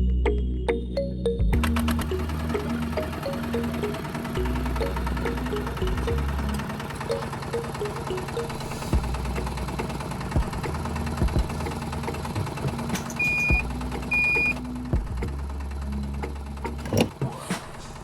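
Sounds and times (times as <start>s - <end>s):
small motor running: 1.6s - 14.9s
short high beeps: 13.2s - 14.6s.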